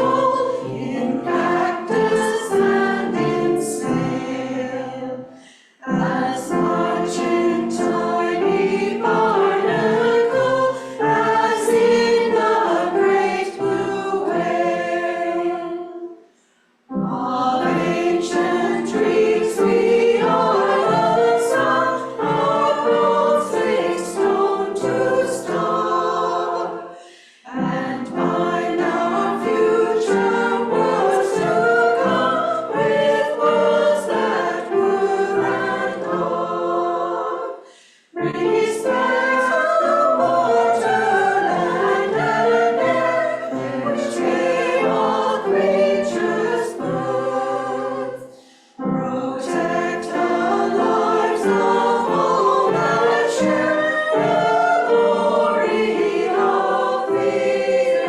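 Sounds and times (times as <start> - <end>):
choir singing in harmony: 0.0 - 58.0
singers breathing: 5.3 - 5.8, 10.7 - 11.0, 16.2 - 16.9, 26.8 - 27.5, 37.6 - 38.2, 48.3 - 48.8.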